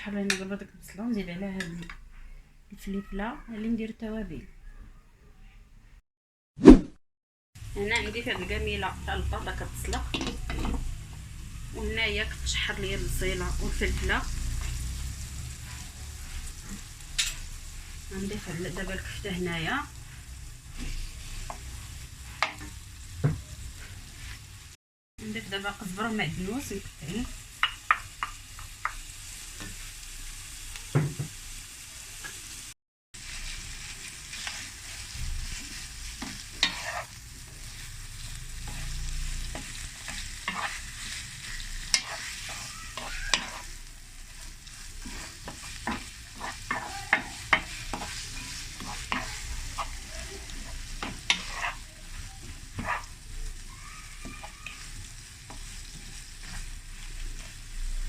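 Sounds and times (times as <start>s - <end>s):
meat sizzling in oil: 7.6s - 58.0s
utensil tapping and scraping pan: 9.8s - 11.2s, 27.6s - 29.0s, 34.3s - 37.2s, 38.7s - 43.8s, 44.6s - 53.2s.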